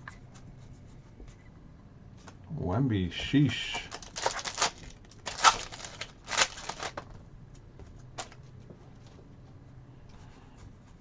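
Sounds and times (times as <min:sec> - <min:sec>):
cards rustling against cards: 0:03.2 - 0:07.1, 0:08.1 - 0:09.2.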